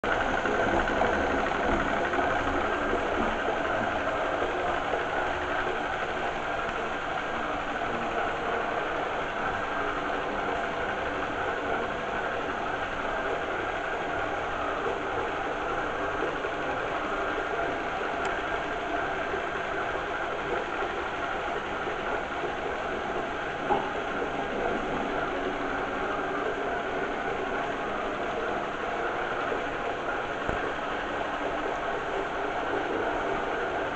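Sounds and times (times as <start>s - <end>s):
robot vacuum cleaner running: 0.1s - 33.9s.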